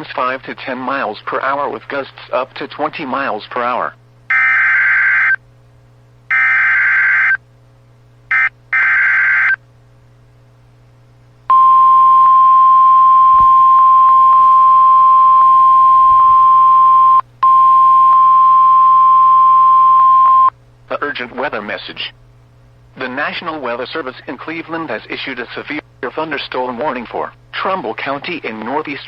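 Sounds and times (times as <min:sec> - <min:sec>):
steady warning alarm tone: 0:04.3 - 0:05.4, 0:06.3 - 0:07.4, 0:08.3 - 0:09.6, 0:11.5 - 0:20.5.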